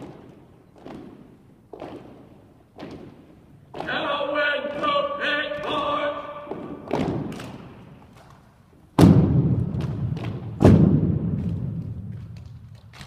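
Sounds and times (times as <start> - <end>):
thumps on floor echoing: 0.0 - 4.1, 5.6 - 7.7, 9.0 - 12.6
person shouting command: 3.8 - 6.6.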